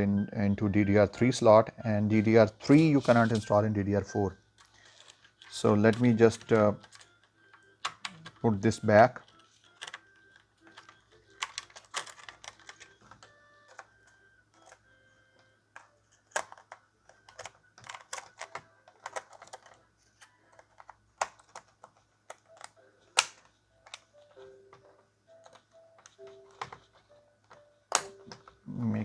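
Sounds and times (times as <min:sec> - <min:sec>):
plastic and metal parts clicking: 0:04.6 - 0:14.8, 0:15.7 - 0:28.6.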